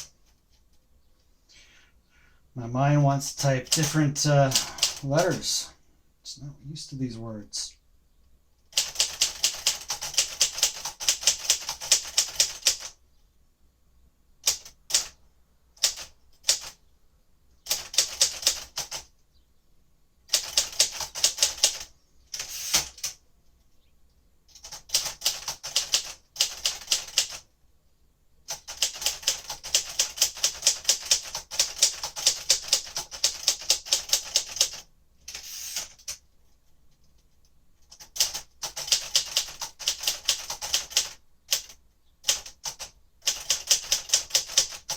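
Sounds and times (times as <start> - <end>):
manual typewriter keystrokes: 3.6 - 5.5, 8.7 - 13.0, 15.8 - 16.8, 17.7 - 19.1, 20.3 - 23.2, 24.5 - 27.4, 28.5 - 36.2, 37.8 - 44.9.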